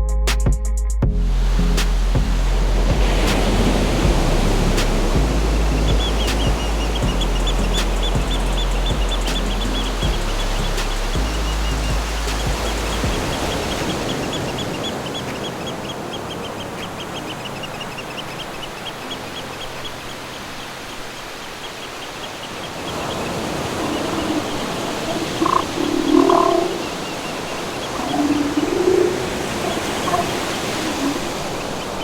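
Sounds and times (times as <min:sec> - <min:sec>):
rushing waves: 0:01.4 - 0:32.0
animal calls: 0:22.2 - 0:32.0.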